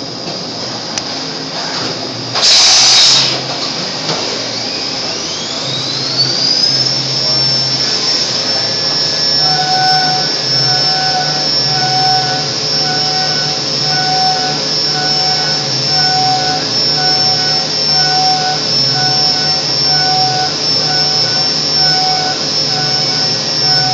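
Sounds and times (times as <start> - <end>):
end mill cutting metal: 2.1 - 23.9
milling spindle whine: 2.1 - 23.9
short loud hiss: 2.4 - 3.4.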